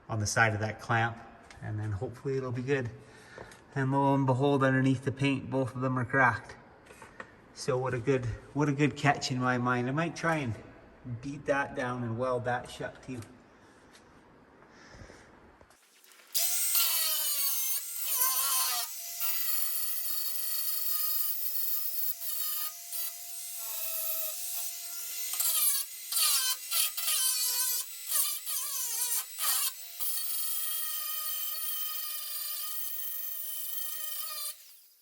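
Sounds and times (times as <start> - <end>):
angle grinder grinding steel: 16.3 - 35.0.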